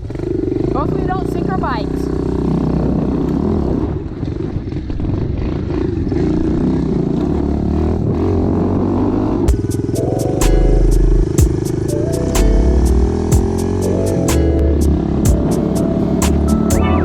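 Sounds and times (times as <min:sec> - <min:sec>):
dirt bike engine revving: 0:05.7 - 0:17.0
music with a regular beat: 0:09.5 - 0:17.0.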